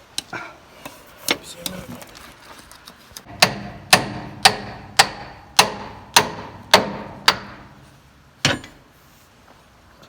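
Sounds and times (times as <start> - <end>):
hammer striking metal: 3.3 - 7.8.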